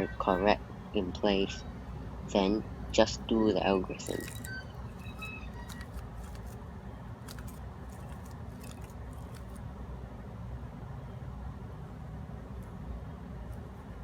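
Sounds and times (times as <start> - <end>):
puzzle cube plastic clicks: 4.0 - 6.6, 7.2 - 9.6.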